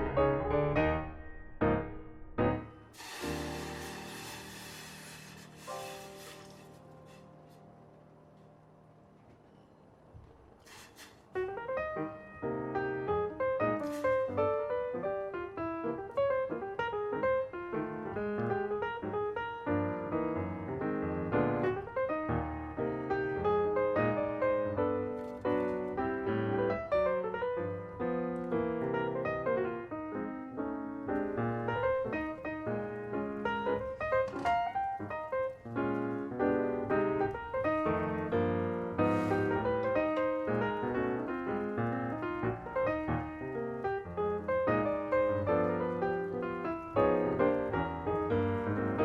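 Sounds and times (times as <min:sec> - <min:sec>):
piano music: 0:00.0 - 0:10.0, 0:11.4 - 0:49.0
brief hiss: 0:02.9 - 0:07.7, 0:10.6 - 0:11.5.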